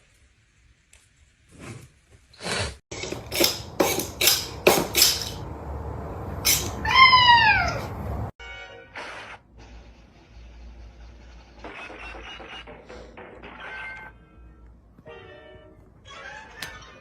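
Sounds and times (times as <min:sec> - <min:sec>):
cat meowing: 0:06.5 - 0:08.0.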